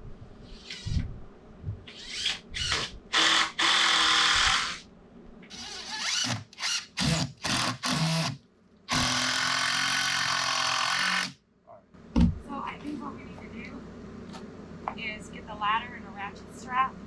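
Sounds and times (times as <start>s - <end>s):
power drill driving screws: 1.9s - 4.8s, 5.5s - 11.4s.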